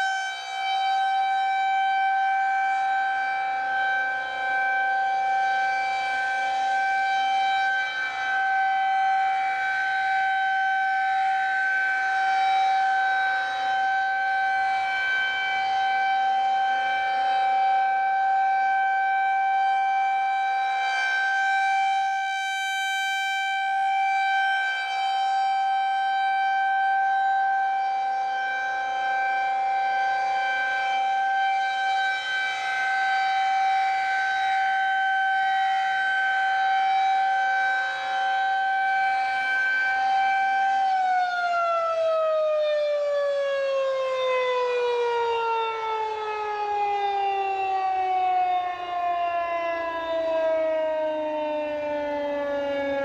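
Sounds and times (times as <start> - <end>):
siren winding down: 0.0 - 53.0
warning siren steady tone: 0.0 - 53.0.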